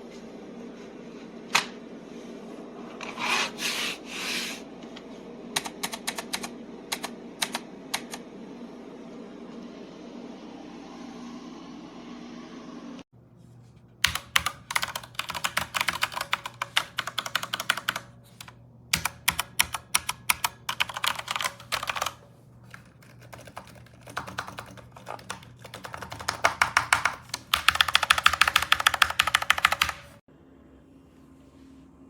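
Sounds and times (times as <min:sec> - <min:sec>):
mechanical keyboard typing: 0:05.6 - 0:08.2, 0:14.0 - 0:30.2.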